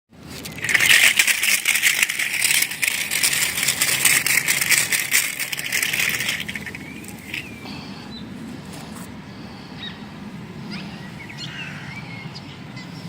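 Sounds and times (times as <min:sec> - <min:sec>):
packaging crackling and rattling: 0:00.3 - 0:07.6.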